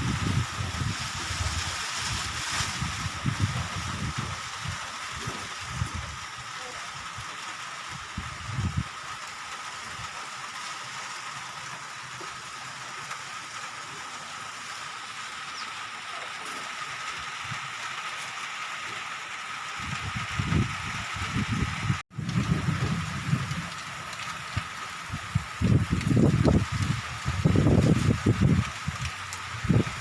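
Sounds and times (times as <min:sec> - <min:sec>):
wind gusts buffeting microphone: 0:00.0 - 0:06.2, 0:08.2 - 0:08.8, 0:19.8 - 0:30.0
wind and rain hiss: 0:00.0 - 0:30.0.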